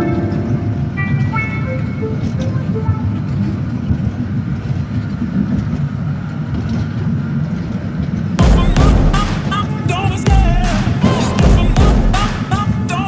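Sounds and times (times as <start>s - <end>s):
loud music with singing: 8.4s - 13.0s.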